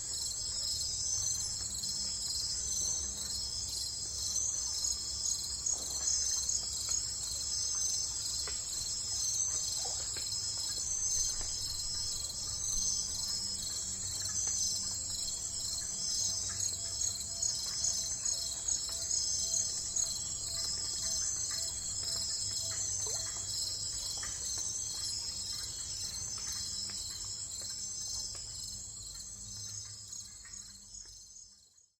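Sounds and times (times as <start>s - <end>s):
crickets chirping: 0.0s - 31.7s.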